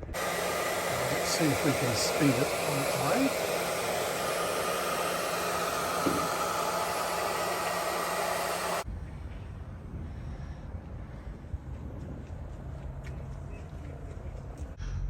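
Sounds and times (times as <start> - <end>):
hot-air blower hissing: 0.0 - 8.9.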